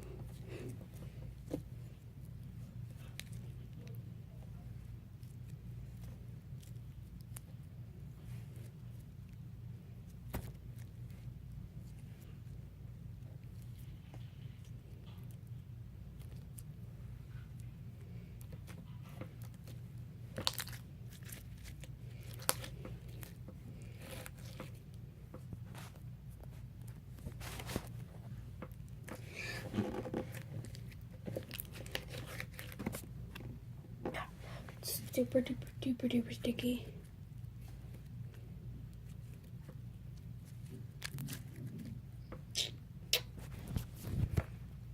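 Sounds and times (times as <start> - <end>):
steady low hum: 0.0 - 44.9
slime clicks and crackles: 19.4 - 23.4.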